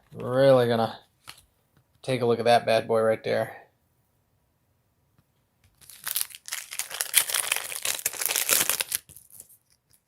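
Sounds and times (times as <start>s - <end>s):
plastic wrapper tearing and crinkling: 5.8s - 10.0s.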